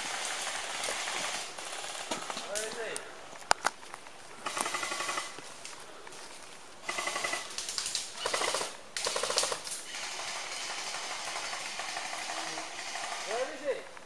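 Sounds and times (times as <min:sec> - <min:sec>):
airsoft gun full-auto bursts: 0:00.1 - 0:02.4, 0:04.4 - 0:05.3, 0:06.8 - 0:07.5, 0:08.2 - 0:13.7.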